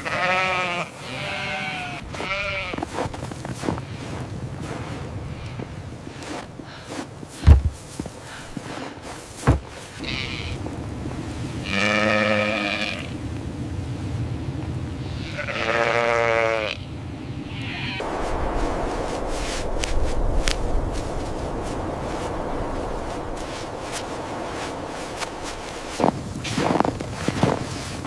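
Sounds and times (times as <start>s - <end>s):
sheep bleating: 0.0s - 2.9s, 11.7s - 13.1s, 15.1s - 16.8s, 17.5s - 18.0s
dull thumps: 7.4s - 7.8s.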